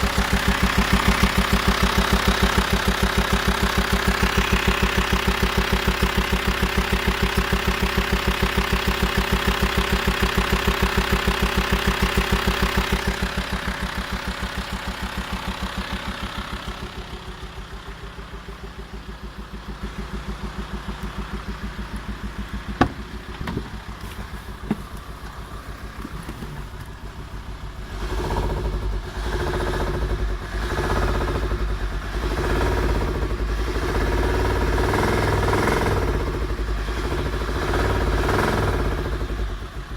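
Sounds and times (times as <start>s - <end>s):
loud uneven low rumble: 0.0s - 34.8s
diesel engine pulsing: 0.0s - 39.9s
sharp knocks: 22.8s - 23.8s.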